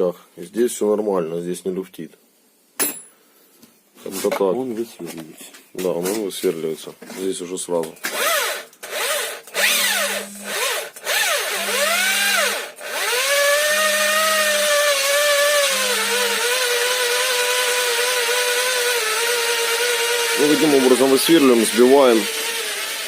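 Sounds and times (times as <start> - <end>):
cordless drill drilling rivets: 8.0 - 23.0.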